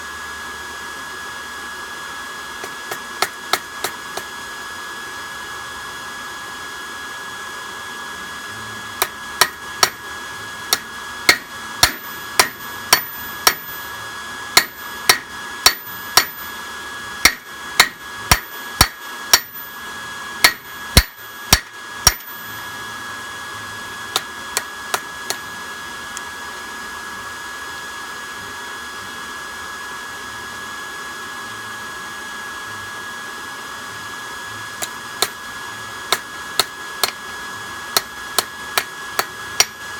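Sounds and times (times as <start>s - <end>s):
steady high-pitched whine: 0.0s - 39.9s
hammer striking metal spike: 2.6s - 4.3s, 9.0s - 10.0s, 10.7s - 13.8s, 14.5s - 16.5s, 17.2s - 19.7s, 20.4s - 22.4s, 24.1s - 25.4s, 34.8s - 35.4s, 36.1s - 37.2s, 37.9s - 39.8s.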